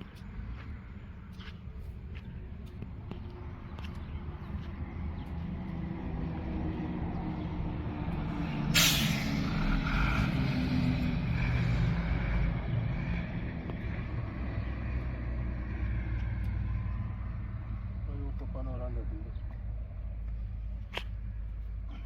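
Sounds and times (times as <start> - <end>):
short sharp hiss: 8.8 - 9.4.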